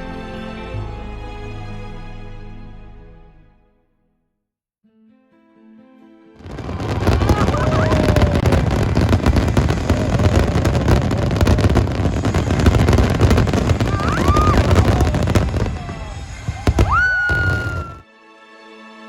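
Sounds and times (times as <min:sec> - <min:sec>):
music: 0:00.0 - 0:19.0
fireworks booming and crackling: 0:06.4 - 0:18.0.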